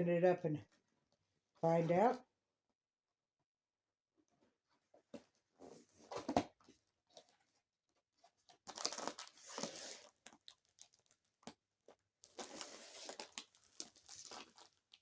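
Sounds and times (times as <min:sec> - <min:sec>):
packaging tearing and crinkling: 0:08.6 - 0:11.6, 0:12.2 - 0:15.0.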